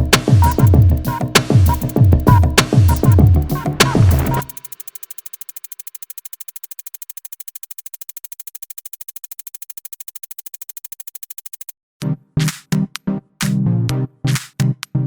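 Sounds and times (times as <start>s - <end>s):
choppy synth chords with bass: 0.0s - 4.5s, 12.0s - 15.0s
synth ticking pulse: 0.0s - 11.7s.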